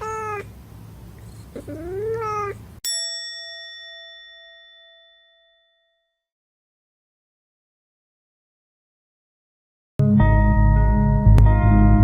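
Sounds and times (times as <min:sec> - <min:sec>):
cat meowing: 0:00.0 - 0:00.6, 0:01.4 - 0:02.7
bell-like ding: 0:02.8 - 0:06.3.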